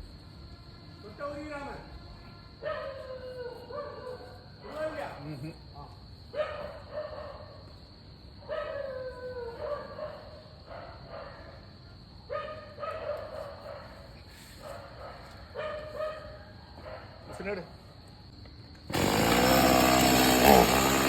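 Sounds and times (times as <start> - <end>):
dog barking and whining: 8.5 - 11.6, 14.7 - 17.1.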